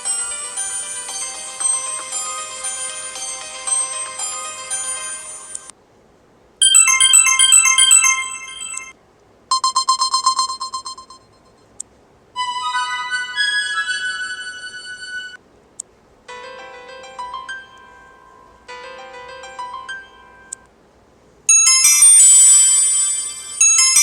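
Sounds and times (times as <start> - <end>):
bright chiming tune: 0.0 - 5.7, 6.6 - 8.9, 21.5 - 24.0
electronic ringtone melodies: 0.0 - 5.7, 6.6 - 8.9, 21.5 - 24.0.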